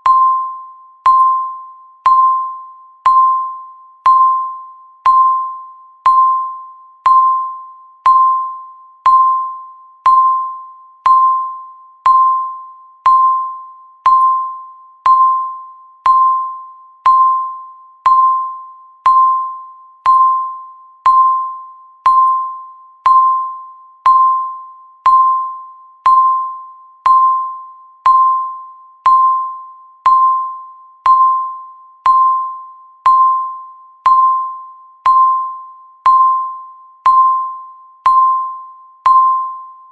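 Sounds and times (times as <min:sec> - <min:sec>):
countdown timer beep: 0:00.0 - 0:39.9.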